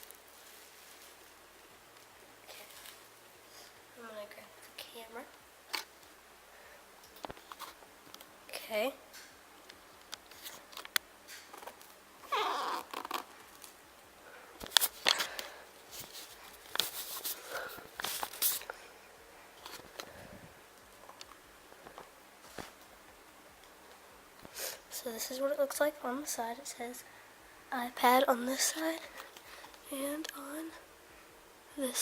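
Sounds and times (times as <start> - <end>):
clicks and rustles: 14.6 - 18.8.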